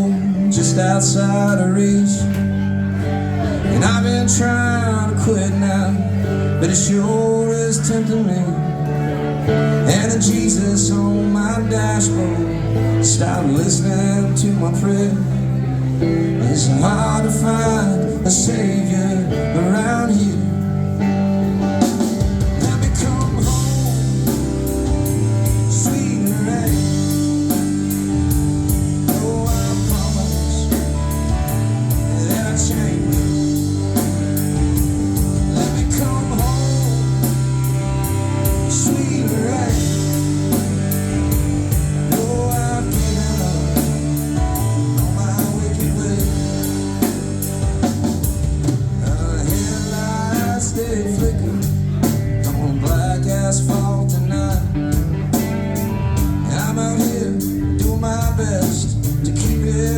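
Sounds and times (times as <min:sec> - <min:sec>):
band playing instrumental: 0:00.0 - 0:59.9
guitars: 0:00.0 - 0:59.9
drum kit beat: 0:20.7 - 0:59.9.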